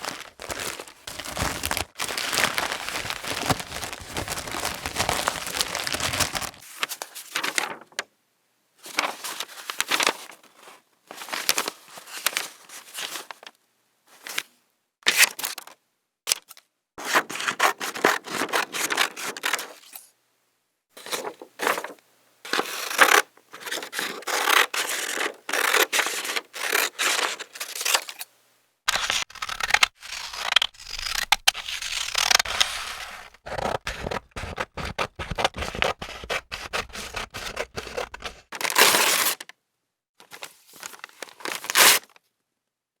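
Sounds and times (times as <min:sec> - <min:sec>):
paper tearing: 0:00.0 - 0:06.6, 0:07.4 - 0:07.8, 0:21.0 - 0:28.2, 0:28.9 - 0:39.5, 0:40.8 - 0:42.1
scissors cutting paper: 0:22.5 - 0:28.2, 0:28.9 - 0:39.4.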